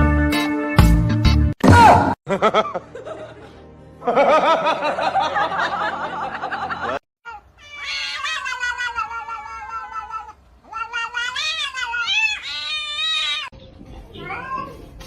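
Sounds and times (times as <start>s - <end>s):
music: 0.0s - 7.0s, 13.6s - 15.0s
snickering laugh: 2.3s - 7.0s
cat meowing: 7.3s - 15.0s.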